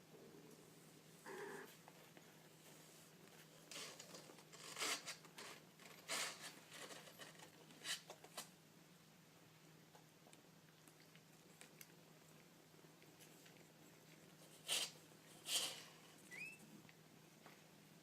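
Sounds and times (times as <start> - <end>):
faint steady hum: 0.0 - 18.0
rustling scratching scrapes: 2.6 - 8.5, 13.2 - 16.2.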